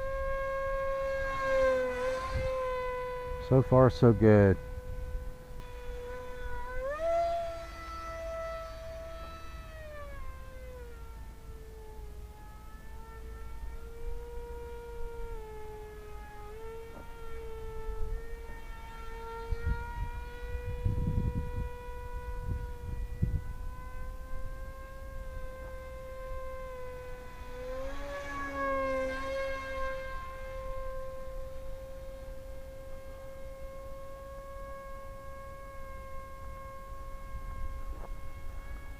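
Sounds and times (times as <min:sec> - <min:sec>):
electric propeller plane whining: 0:00.0 - 0:38.9
wind buffeting microphone: 0:13.0 - 0:27.6.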